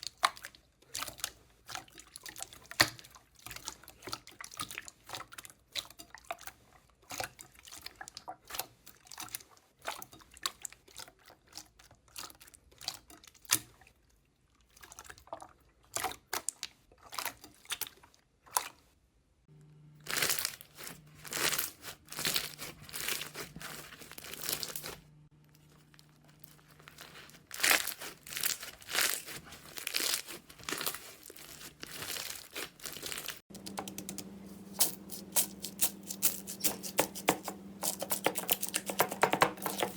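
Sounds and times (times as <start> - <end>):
faint low hum: 19.5 - 21.3, 33.5 - 39.9
slime crackling and popping: 25.6 - 33.4.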